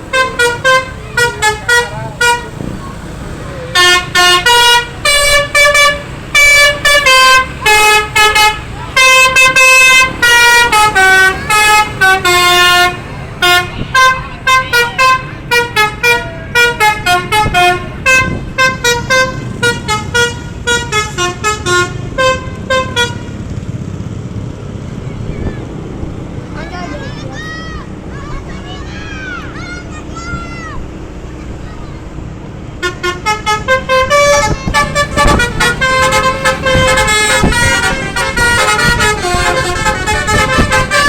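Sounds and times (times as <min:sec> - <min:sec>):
musical bus horn playing a tune: 0:00.0 - 0:23.6, 0:32.8 - 0:41.0.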